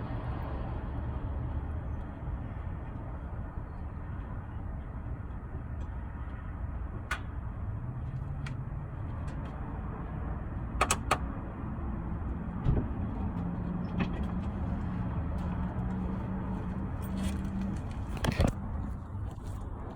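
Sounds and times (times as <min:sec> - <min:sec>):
sharp clicks from car: 0:10.8 - 0:11.3.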